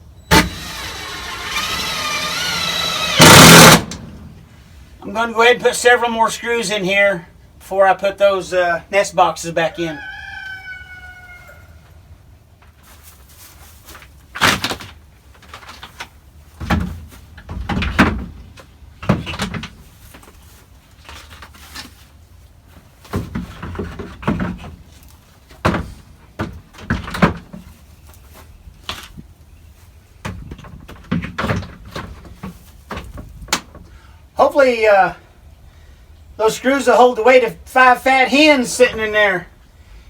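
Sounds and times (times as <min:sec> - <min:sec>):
rooster crowing: 0:09.9 - 0:11.9.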